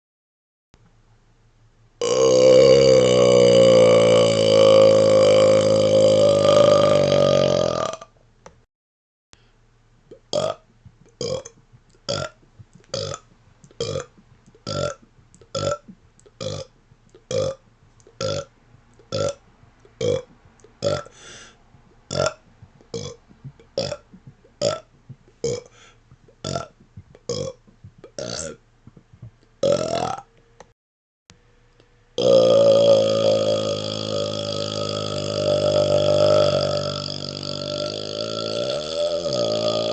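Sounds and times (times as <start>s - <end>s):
man burping: 2.0s - 8.1s, 10.1s - 18.5s, 19.1s - 21.5s, 22.1s - 28.6s, 29.6s - 30.3s, 32.2s - 39.9s.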